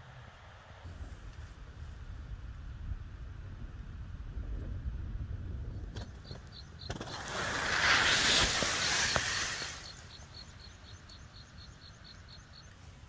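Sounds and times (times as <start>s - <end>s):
small bird chirping: 5.7s - 12.8s
rushing hiss: 6.9s - 10.7s.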